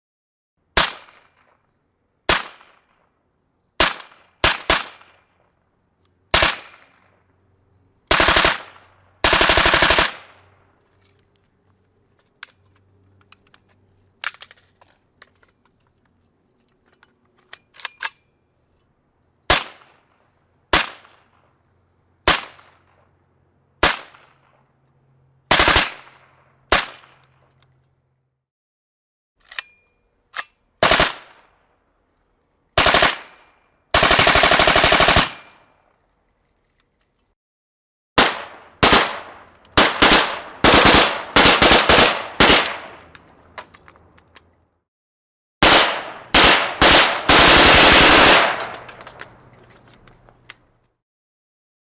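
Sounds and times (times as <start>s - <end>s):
rifle single shots: 0.8s - 1.5s, 3.8s - 5.2s, 6.3s - 7.1s, 23.8s - 24.5s, 38.2s - 43.1s, 45.6s - 49.0s
automatic rifle fire: 6.3s - 6.9s, 8.1s - 10.4s, 25.5s - 27.2s, 30.8s - 31.4s, 32.8s - 35.6s, 38.2s - 43.0s, 45.6s - 48.9s
rifle reloading clicks and rattles: 9.3s - 19.0s, 29.4s - 31.4s, 32.1s - 37.3s, 38.9s - 44.8s, 46.4s - 51.0s.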